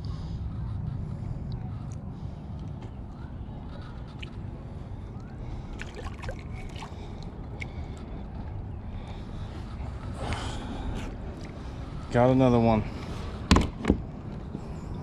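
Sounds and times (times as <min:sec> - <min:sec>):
low rumble: 0:00.0 - 0:15.0
water sloshing against hull: 0:05.1 - 0:08.0.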